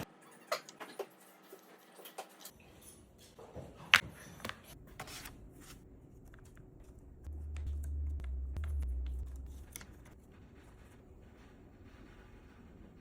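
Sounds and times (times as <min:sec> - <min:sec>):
low hum: 0:06.8 - 0:13.0.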